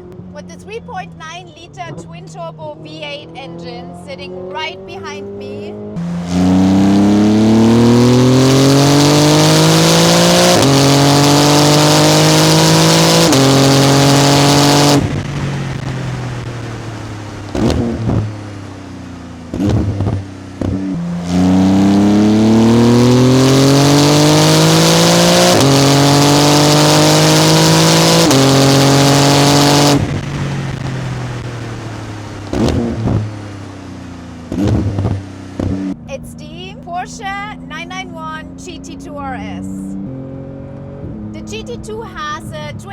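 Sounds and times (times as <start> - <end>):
car engine accelerating hard: 2.6 - 36.2, 37.6 - 42.9
engine bursts on lift-off: 5.9 - 36.0.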